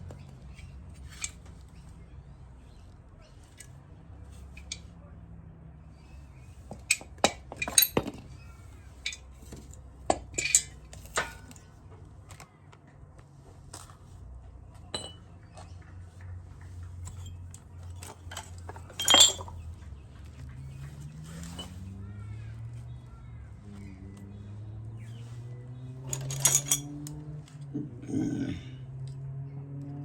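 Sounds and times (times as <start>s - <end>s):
metal tools clinking: 0.5s - 1.7s, 4.3s - 4.9s, 6.7s - 11.7s, 14.9s - 15.3s, 17.0s - 19.7s, 21.2s - 22.0s, 25.8s - 28.4s.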